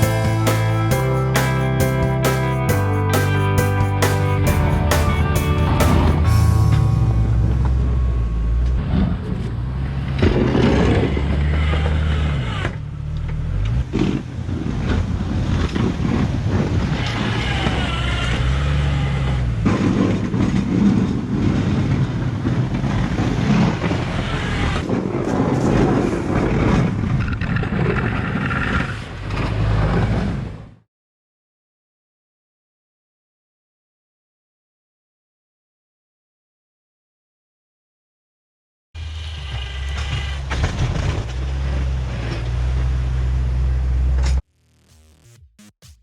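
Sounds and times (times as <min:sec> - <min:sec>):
engine revving under load: 0:08.8 - 0:15.6.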